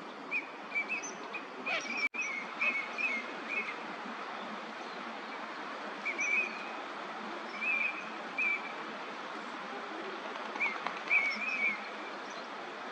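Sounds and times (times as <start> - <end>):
steady background hiss: 0.0 - 12.9.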